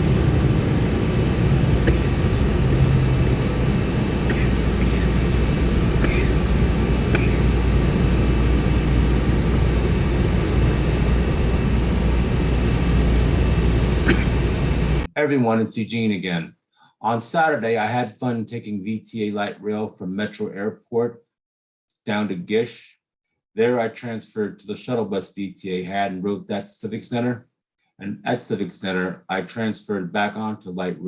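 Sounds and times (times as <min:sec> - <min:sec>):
bus engine and road rumble: 0:00.0 - 0:15.1.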